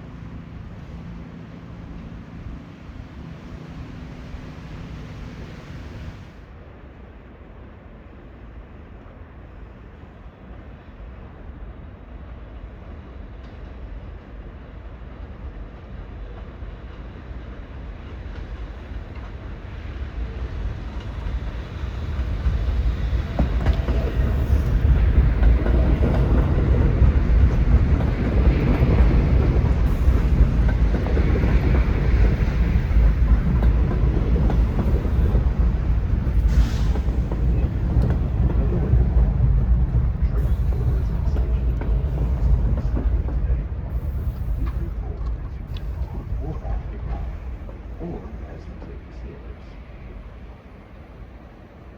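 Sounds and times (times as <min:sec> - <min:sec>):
subway train approaching: 0:00.0 - 0:51.9
rail clatter: 0:18.0 - 0:50.0.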